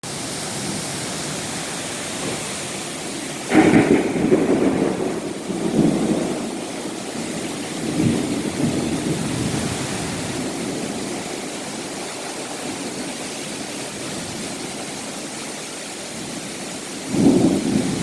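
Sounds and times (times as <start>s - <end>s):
steady rain: 0.0s - 18.0s
thunder rumbling: 2.1s - 14.8s, 17.0s - 18.0s.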